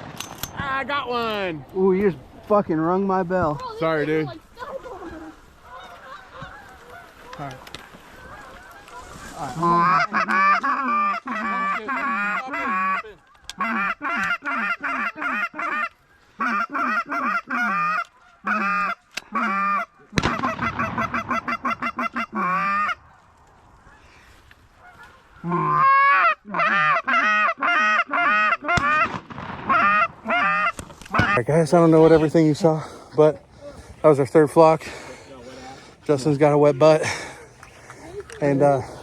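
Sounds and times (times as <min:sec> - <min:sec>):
goose call honking: 0:04.2 - 0:23.1, 0:24.8 - 0:33.0.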